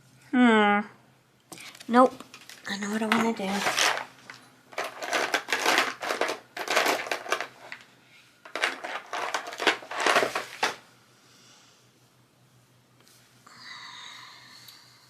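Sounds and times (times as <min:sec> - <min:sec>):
papers rustling: 0:01.6 - 0:10.8.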